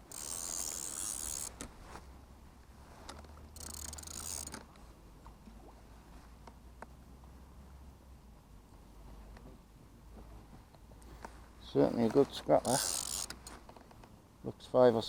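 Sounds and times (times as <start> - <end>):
fishing reel drag ratcheting: 0.0 - 1.7, 3.5 - 4.7, 12.4 - 13.6.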